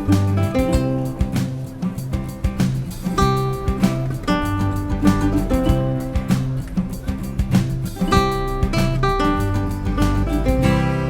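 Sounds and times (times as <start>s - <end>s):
acoustic guitar melody: 0.0s - 11.0s.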